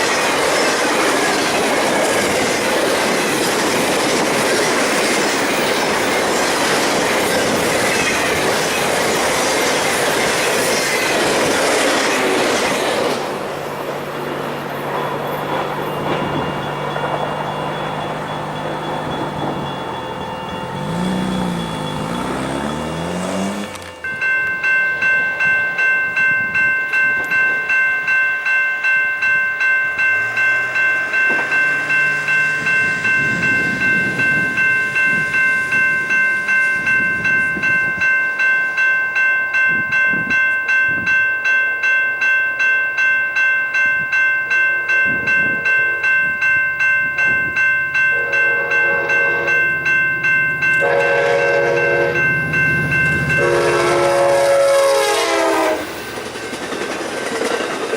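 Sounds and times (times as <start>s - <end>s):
crossing bell ringing: 0.0s - 57.7s
locomotive horn blasts: 48.1s - 49.8s, 50.8s - 52.3s, 53.3s - 55.9s.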